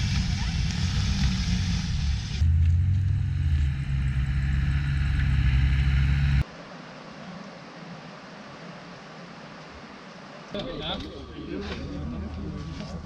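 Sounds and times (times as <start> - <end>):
car engine running: 0.0 - 6.4.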